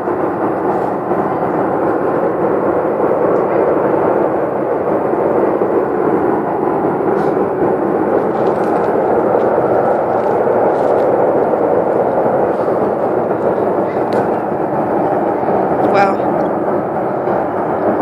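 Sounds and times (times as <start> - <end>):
loud steady rumbling: 0.0 - 18.0.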